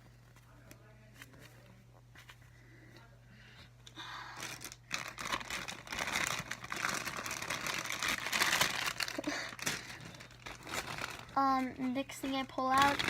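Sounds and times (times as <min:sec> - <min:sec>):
plastic packaging crinkling: 0:04.1 - 0:13.0.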